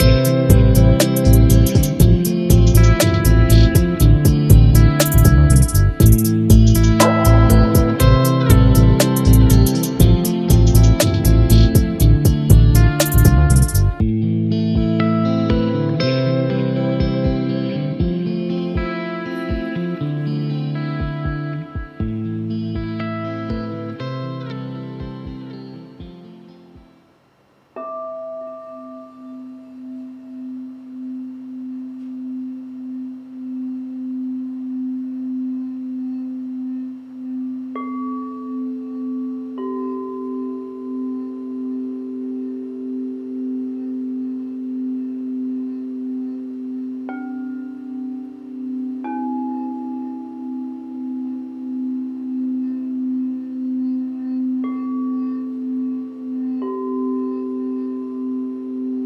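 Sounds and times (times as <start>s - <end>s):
higher singing bowl struck: 0.0s - 14.0s, 27.8s - 59.0s
low singing bowl ringing: 0.0s - 14.0s, 27.8s - 59.0s.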